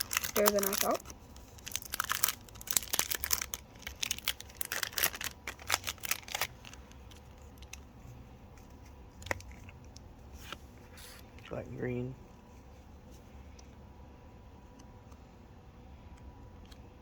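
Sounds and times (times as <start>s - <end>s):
foil wrapper crinkling and tearing: 0.0s - 7.8s
pack and cards rustling: 0.0s - 7.8s.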